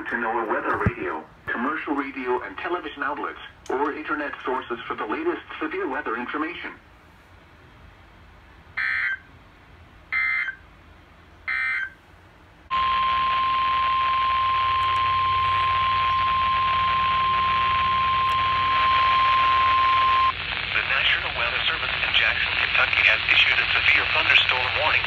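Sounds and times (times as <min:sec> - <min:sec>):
radio hiss: 0:00.0 - 0:06.8, 0:12.7 - 0:25.0
steady warning alarm tone: 0:08.8 - 0:09.3, 0:10.1 - 0:10.6, 0:11.5 - 0:12.0, 0:12.7 - 0:20.3.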